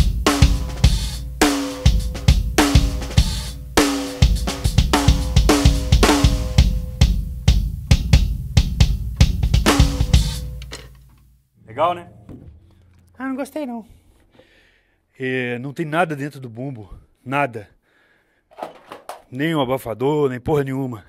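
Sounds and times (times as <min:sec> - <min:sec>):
bass drum: 0:00.0 - 0:10.7, 0:11.8 - 0:13.2
hi-hat and cymbals: 0:00.0 - 0:10.7
snare drum backbeats: 0:00.2 - 0:06.8, 0:08.0 - 0:10.6.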